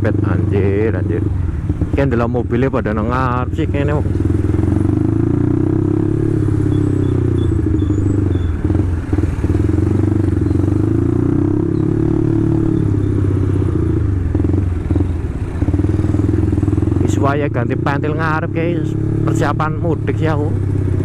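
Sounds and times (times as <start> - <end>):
man talking: 0.0 - 1.3, 2.0 - 4.1, 17.0 - 20.6
motorcycle engine revving: 0.0 - 21.0.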